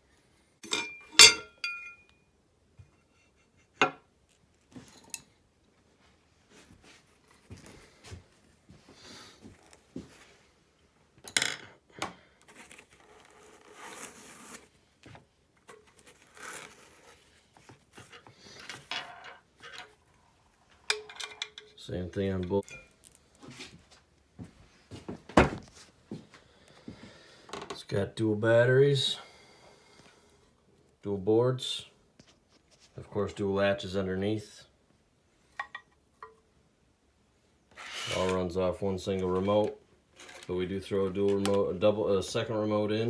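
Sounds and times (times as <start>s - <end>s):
hard parts clicking and clinking: 0.6s - 2.2s, 20.7s - 21.8s
rustling and scraping: 5.8s - 10.6s, 12.4s - 21.8s, 22.4s - 26.4s, 32.2s - 33.1s, 37.7s - 38.5s, 39.1s - 41.6s.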